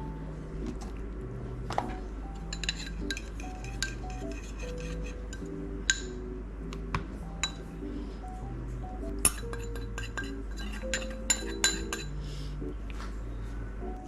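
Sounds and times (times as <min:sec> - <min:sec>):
soft background music: 0:00.0 - 0:14.0
dishes and cutlery clinking: 0:01.7 - 0:06.2, 0:07.4 - 0:07.7, 0:09.2 - 0:12.2.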